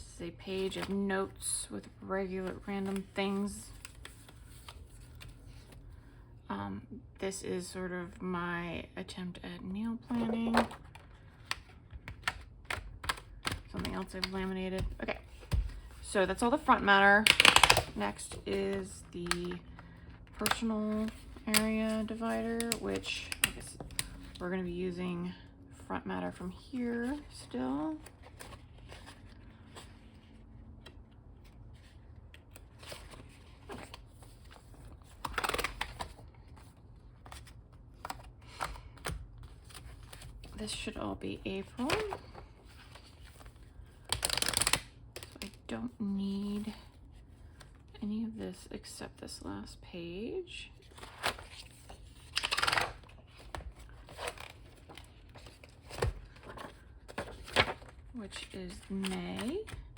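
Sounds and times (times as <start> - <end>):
paper pages rustling: 2.3 - 5.9, 26.4 - 40.9, 41.6 - 45.6, 50.8 - 59.9
paper rustling: 50.8 - 59.9.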